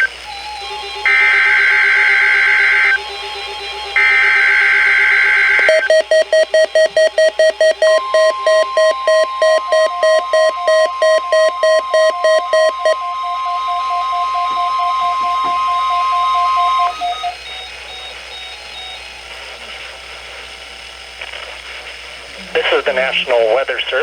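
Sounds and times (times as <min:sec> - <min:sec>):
steady warning alarm tone: 0:00.0 - 0:19.4
screechy digital data tones: 0:04.0 - 0:19.0
rapid alert beeping: 0:05.6 - 0:13.1.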